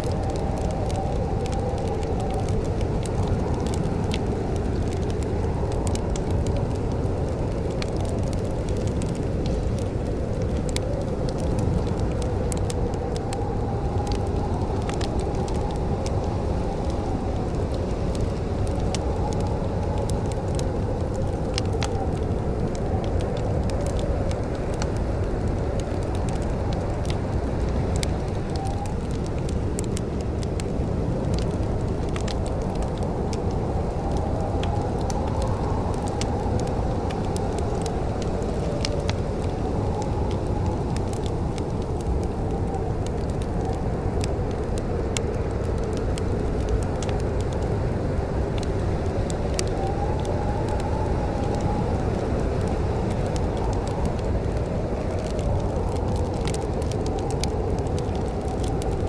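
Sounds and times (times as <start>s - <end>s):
low rumble with moaning tone: 0.0s - 59.0s
wood fire crackling: 0.0s - 59.0s.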